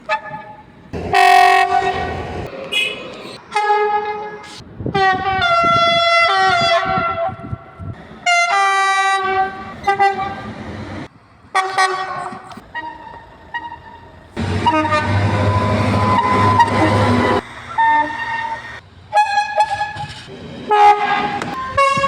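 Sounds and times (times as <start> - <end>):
train horn blasts: 0.1 - 7.6, 8.2 - 10.5, 11.5 - 20.1, 20.7 - 22.0.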